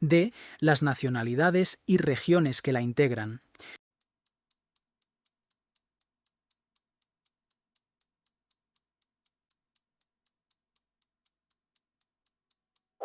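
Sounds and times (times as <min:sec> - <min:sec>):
clock ticking: 0:04.0 - 0:13.0.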